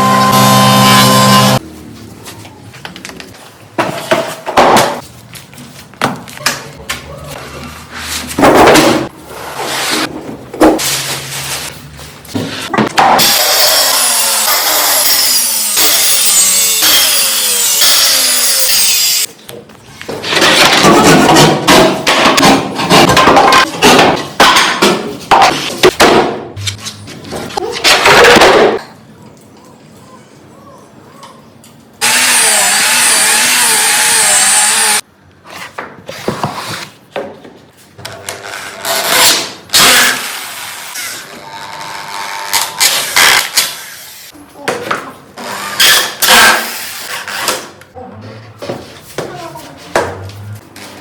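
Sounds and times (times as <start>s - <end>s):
power saw cutting wood: 0.0s - 1.6s, 13.2s - 19.3s, 32.0s - 35.0s, 38.6s - 44.2s
power tool motor running: 0.0s - 1.6s, 32.0s - 35.0s.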